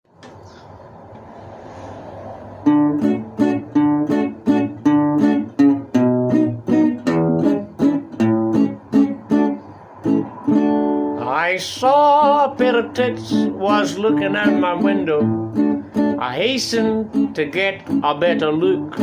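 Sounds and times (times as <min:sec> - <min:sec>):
acoustic guitar strumming chords: 0:02.6 - 0:19.0.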